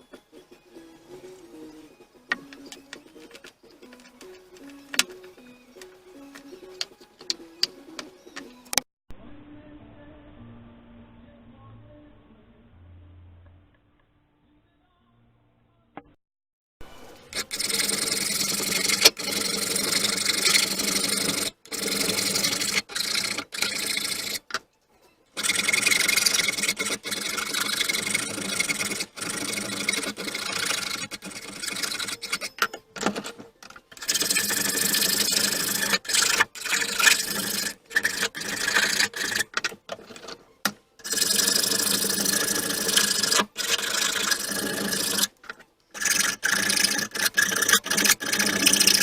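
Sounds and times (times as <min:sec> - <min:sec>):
abrasive rubbing on rusty steel: 0:17.4 - 0:24.6, 0:25.4 - 0:49.0.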